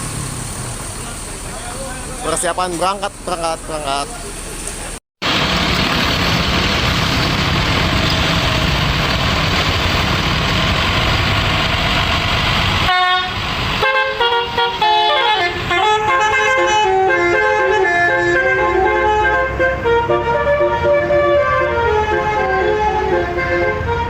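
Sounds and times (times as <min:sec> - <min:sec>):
bus engine and road noise: 0:00.0 - 0:24.0
musical bus air horn: 0:12.8 - 0:24.0.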